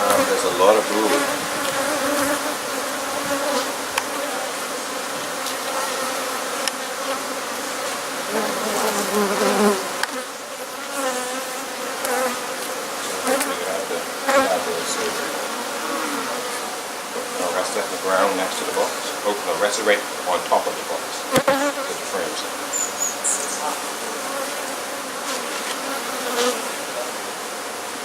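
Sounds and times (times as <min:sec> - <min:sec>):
honeybees buzzing: 0:00.0 - 0:28.0.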